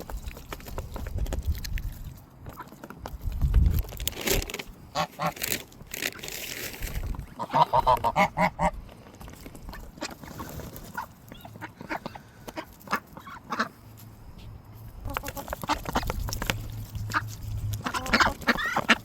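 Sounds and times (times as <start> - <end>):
geese and ducks calling: 4.9 - 5.4, 7.1 - 8.8, 9.6 - 14.0, 15.0 - 19.0
birds pecking clicks: 11.9 - 14.1, 15.0 - 19.0.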